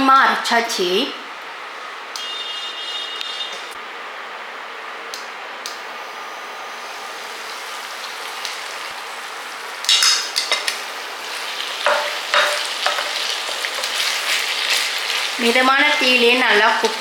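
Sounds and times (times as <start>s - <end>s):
vegetables sizzling in oil: 6.0s - 17.0s.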